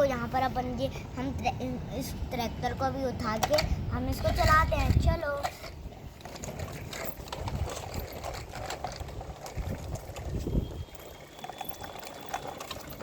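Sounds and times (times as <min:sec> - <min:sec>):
toy tractor knocking and clicking: 0:03.2 - 0:13.0.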